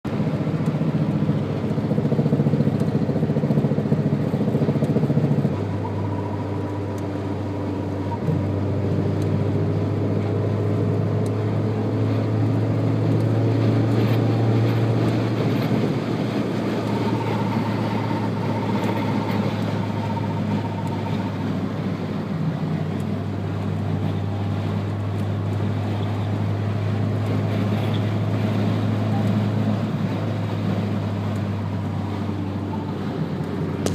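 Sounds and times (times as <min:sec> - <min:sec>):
car drivetrain hum: 0:00.0 - 0:33.9
faint whining tones: 0:04.9 - 0:08.7, 0:13.2 - 0:26.6.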